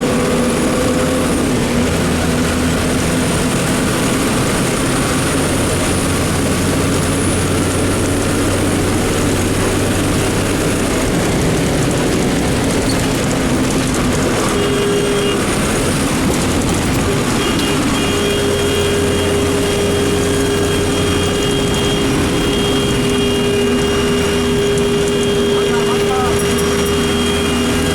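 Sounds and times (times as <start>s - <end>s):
bus engine hum: 0.0s - 27.9s
steady high tone: 18.3s - 27.9s.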